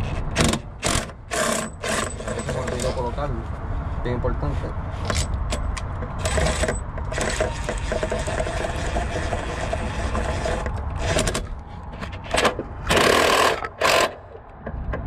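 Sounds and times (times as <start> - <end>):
hands scraping and clicking parts: 0.0 - 3.1, 5.0 - 15.0
steady low rumble: 2.7 - 7.1.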